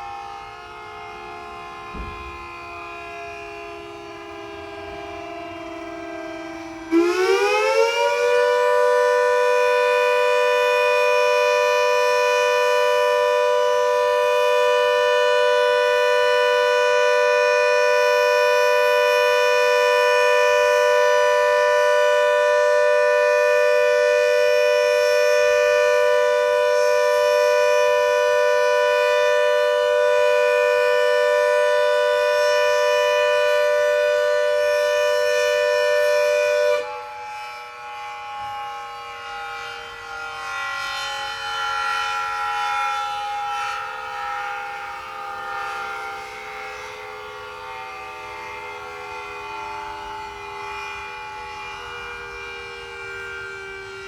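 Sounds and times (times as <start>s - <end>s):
siren wail: 0.0s - 54.0s.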